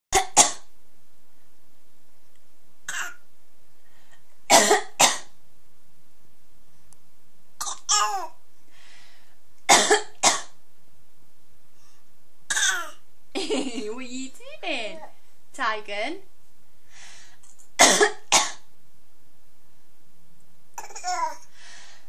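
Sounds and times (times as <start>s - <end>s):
baby fake coughing: 2.9s - 3.2s, 4.5s - 5.3s, 7.6s - 8.4s, 9.7s - 10.5s, 12.5s - 13.0s, 17.8s - 18.6s, 20.8s - 21.4s
woman coughing: 4.5s - 5.3s, 9.7s - 10.5s, 17.8s - 18.6s.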